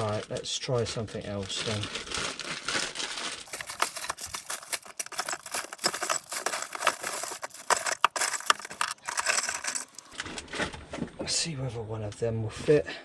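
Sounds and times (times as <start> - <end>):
rustling: 3.5 - 10.2
small parts clicking and rattling: 3.5 - 10.2.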